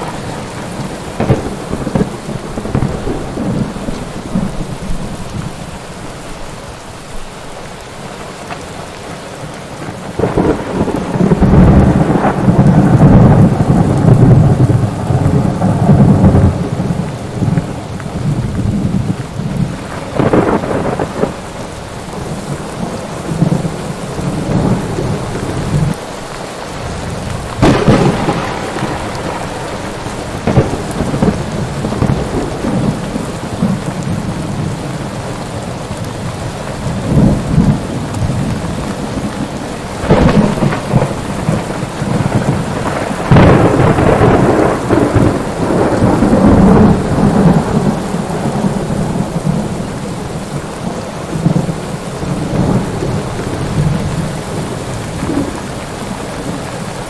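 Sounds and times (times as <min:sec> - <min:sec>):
thunder rolling and clapping: 0:00.0 - 0:05.5, 0:10.0 - 0:21.4, 0:26.8 - 0:34.8, 0:36.9 - 0:49.9
heavy rain: 0:00.0 - 0:57.0.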